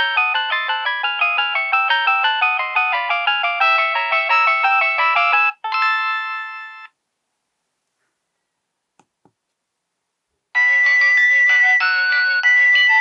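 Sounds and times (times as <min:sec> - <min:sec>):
polyphonic ringtone melody: 0:00.0 - 0:06.9, 0:10.6 - 0:13.0.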